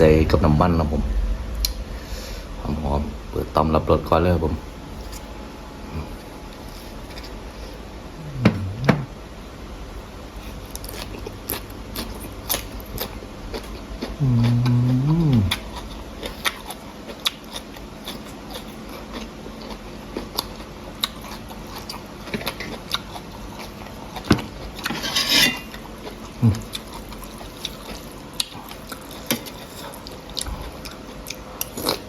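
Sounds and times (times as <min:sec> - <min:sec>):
person chewing: 0:10.4 - 0:32.0
person slurping: 0:14.2 - 0:15.7.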